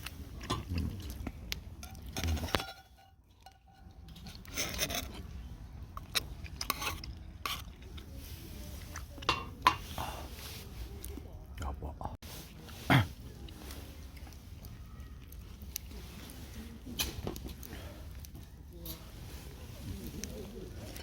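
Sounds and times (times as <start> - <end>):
cookware and utensils clinking: 0.0 - 8.0, 8.8 - 10.1.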